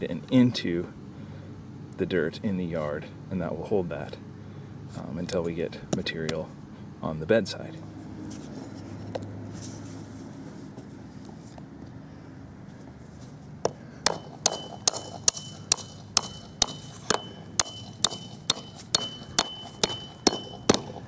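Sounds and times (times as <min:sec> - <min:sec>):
hammer strikes with ringing: 0:14.0 - 0:21.0.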